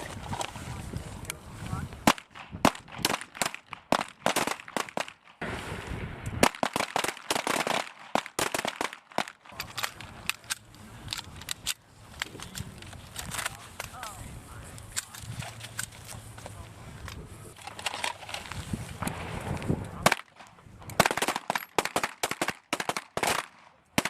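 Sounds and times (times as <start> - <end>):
pistol shots: 19.0 - 24.0.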